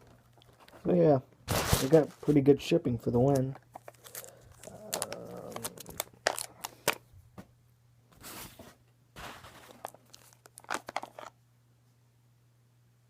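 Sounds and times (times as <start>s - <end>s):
packaging tearing: 1.5s - 2.3s, 3.7s - 7.0s, 9.5s - 11.3s
packaging crinkling: 1.5s - 2.4s, 3.2s - 7.0s, 9.2s - 11.4s.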